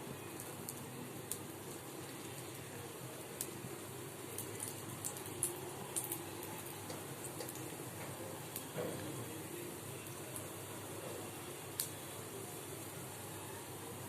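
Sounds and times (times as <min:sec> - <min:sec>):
potatoes sizzling in hot oil: 0:00.0 - 0:14.0
oil popping and crackling: 0:00.2 - 0:10.6, 0:11.7 - 0:12.0.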